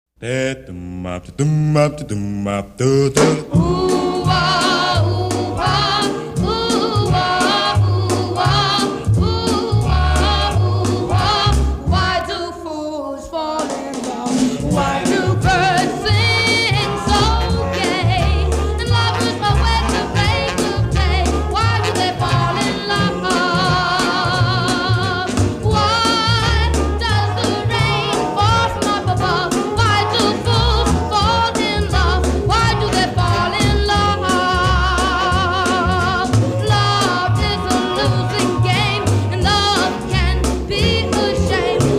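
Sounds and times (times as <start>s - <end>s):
person singing: 0.2s - 41.9s
background music with bass beat: 14.5s - 41.9s.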